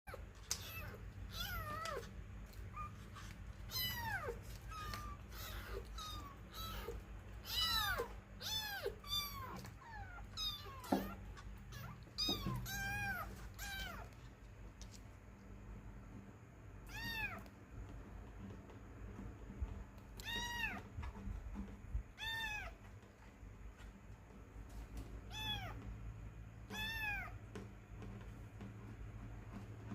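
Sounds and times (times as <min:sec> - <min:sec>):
kitten meowing: 0:03.7 - 0:14.1.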